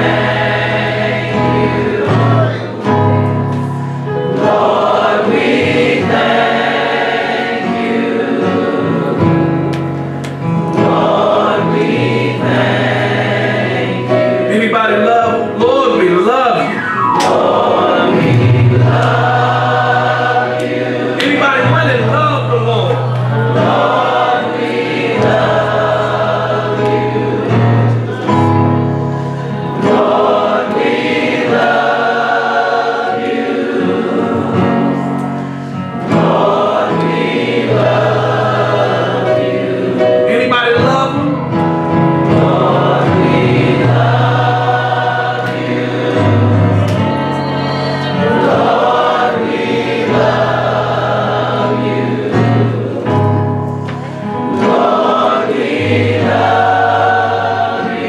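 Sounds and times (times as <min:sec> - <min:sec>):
gospel choir singing: 0:00.0 - 0:58.0
bass line of held notes: 0:16.0 - 0:20.9.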